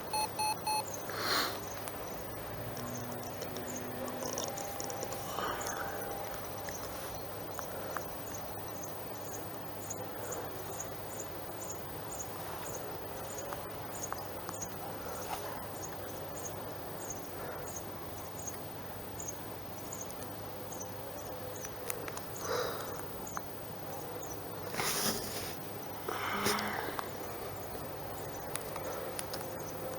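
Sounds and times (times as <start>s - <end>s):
cricket-like chirping: 0.0s - 24.4s
rustle: 9.7s - 17.4s, 24.6s - 29.6s.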